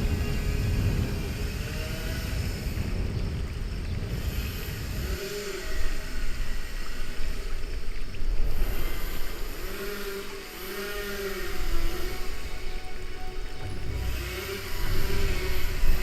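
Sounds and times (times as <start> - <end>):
rushing and splashing water: 0.0 - 16.0
low rumble: 11.4 - 16.0.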